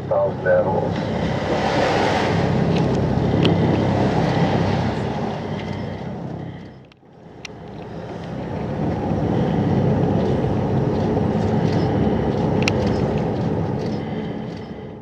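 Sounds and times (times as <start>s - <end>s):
boat and sea noise: 0.0s - 15.0s
wind rumbling on microphone: 0.0s - 15.0s
faint clicks: 10.2s - 14.8s.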